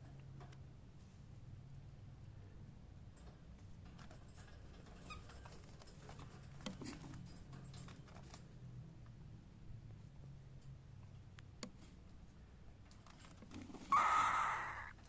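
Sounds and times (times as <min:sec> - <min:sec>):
cockatiel soft peep: 0:13.9 - 0:14.9.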